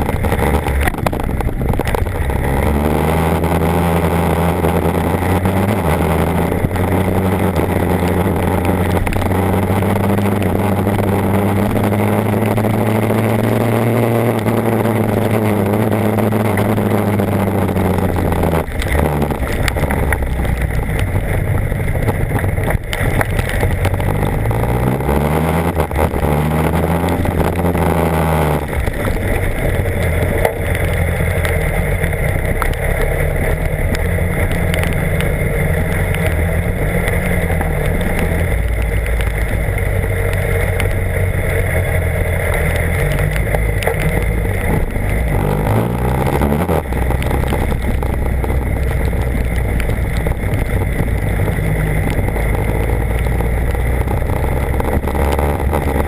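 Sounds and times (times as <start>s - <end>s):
motorcycle engine running: 0.0s - 56.0s
steady rushing noise: 0.0s - 56.0s.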